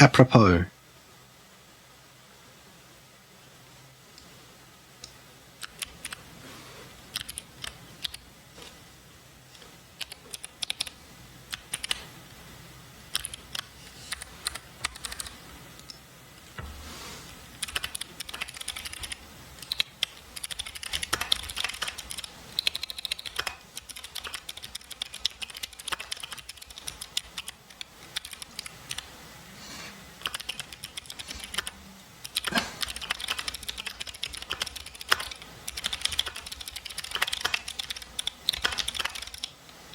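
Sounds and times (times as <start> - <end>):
mechanical keyboard typing: 5.6 - 6.2, 7.1 - 8.2, 10.0 - 12.0, 13.1 - 15.9, 17.6 - 29.1, 30.2 - 39.6.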